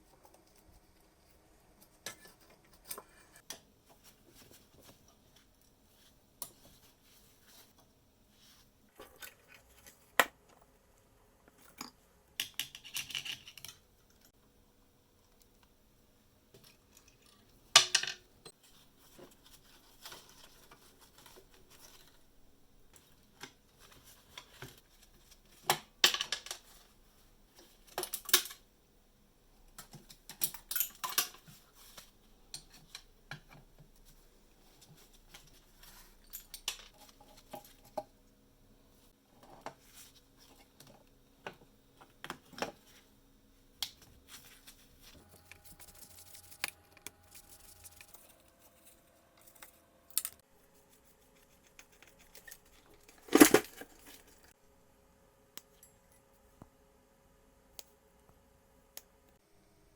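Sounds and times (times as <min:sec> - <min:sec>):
metal parts and tools clinking: 0:30.3 - 0:31.5, 0:51.6 - 0:54.5.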